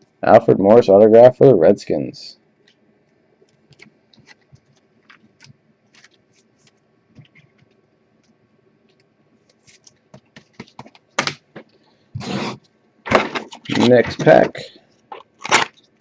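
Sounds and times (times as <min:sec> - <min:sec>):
card rustle: 0:03.8 - 0:07.8, 0:08.9 - 0:11.7
cards clicking and scraping: 0:09.0 - 0:15.9.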